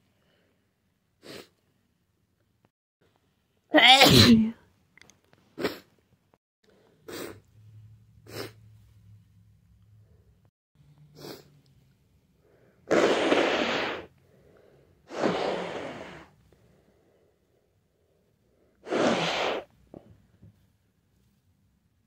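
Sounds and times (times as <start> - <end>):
person sneezing: 3.7 - 4.6, 12.9 - 14.1, 15.1 - 16.3, 18.8 - 19.7
short breaths: 12.4 - 19.7.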